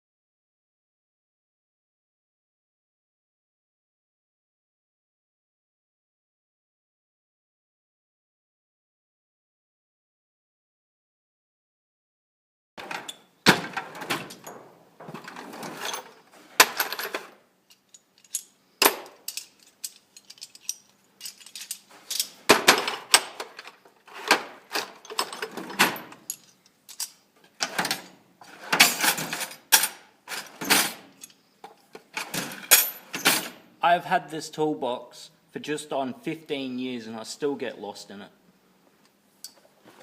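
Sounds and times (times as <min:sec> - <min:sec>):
metal tools clattering in a toolbox: 0:12.8 - 0:31.4.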